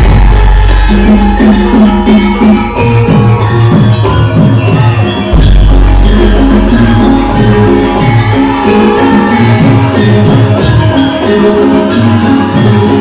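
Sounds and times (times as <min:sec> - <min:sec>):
deep low note: 0:00.0 - 0:03.5
percussion beat: 0:00.0 - 0:13.0
pitched melody: 0:00.0 - 0:13.0.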